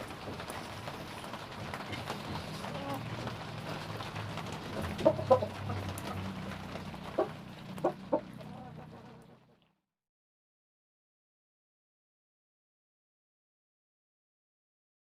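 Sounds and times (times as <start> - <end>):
hen clucking: 2.6 - 3.3, 4.7 - 9.4.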